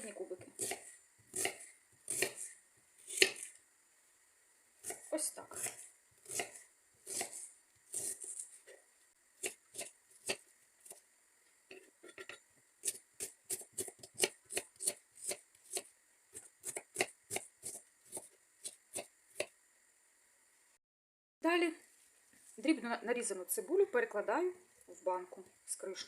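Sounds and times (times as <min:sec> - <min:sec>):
knife chopping an onion: 0:00.4 - 0:03.5, 0:04.8 - 0:08.6, 0:09.4 - 0:11.0, 0:12.1 - 0:19.6.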